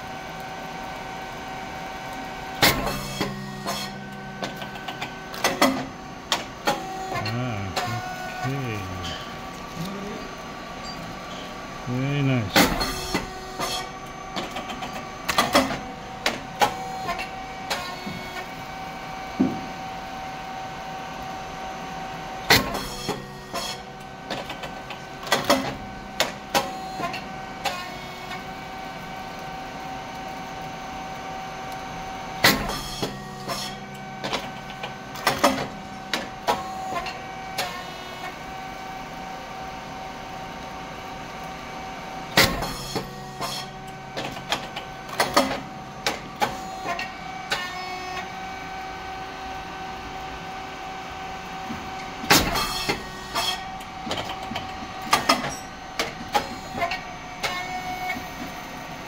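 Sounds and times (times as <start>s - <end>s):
machine motor hum: 0.1s - 59.0s
machine banging and clattering: 12.5s - 16.7s, 42.3s - 47.7s, 51.8s - 58.6s.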